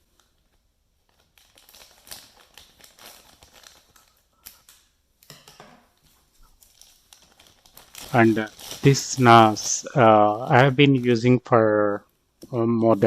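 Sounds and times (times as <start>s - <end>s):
plastic packaging crinkling: 0.1s - 5.0s, 5.9s - 11.2s.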